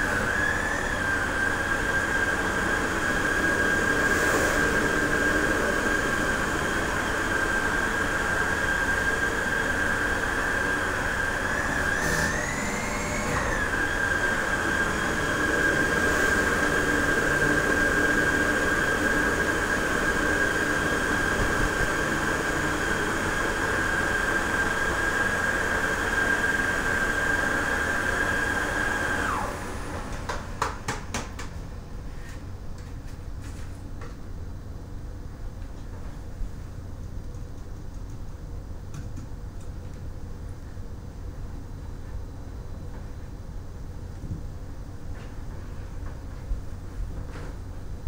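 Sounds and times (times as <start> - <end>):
vacuum cleaner whining: 0.0 - 30.8.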